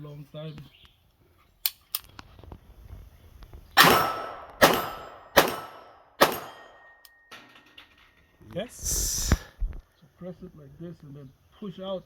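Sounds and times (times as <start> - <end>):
gunshots with ringing echo: 3.8 - 7.0.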